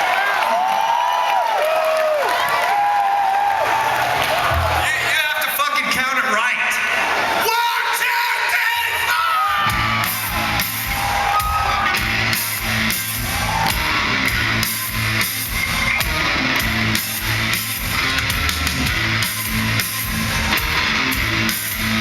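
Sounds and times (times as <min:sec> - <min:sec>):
rock band playing live: 0:04.1 - 0:06.4, 0:07.9 - 0:22.0.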